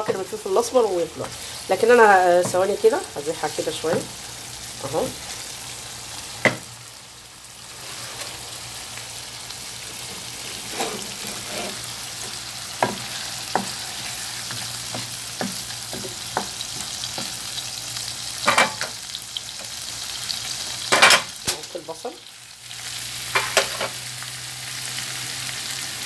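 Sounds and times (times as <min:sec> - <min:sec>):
utensil scraping and knocking on pan: 0:00.0 - 0:00.4, 0:01.2 - 0:04.2, 0:06.4 - 0:06.7, 0:10.0 - 0:17.7, 0:18.4 - 0:19.0
chicken livers sizzling in a pan: 0:00.0 - 0:26.0.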